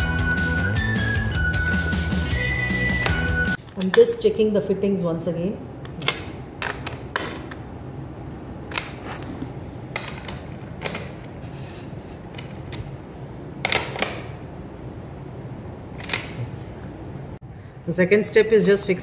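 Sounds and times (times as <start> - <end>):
chair fittings clicking and knocking: 5.9 - 7.6, 8.7 - 11.4, 13.6 - 14.4.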